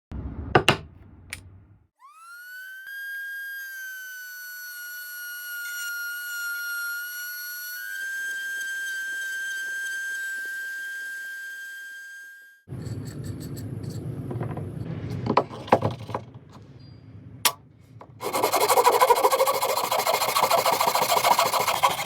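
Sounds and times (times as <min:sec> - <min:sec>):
power tool motor whine: 0:02.0 - 0:12.7, 0:18.2 - 0:22.0.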